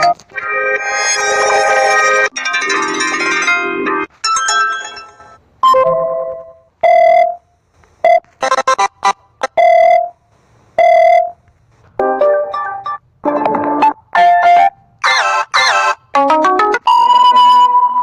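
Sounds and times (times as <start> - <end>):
electronic ringtone melody: 0.0 - 7.4, 8.4 - 10.1, 10.8 - 11.3, 12.0 - 18.0
held ringing beeps: 6.8 - 7.4, 9.4 - 10.2, 10.8 - 11.4.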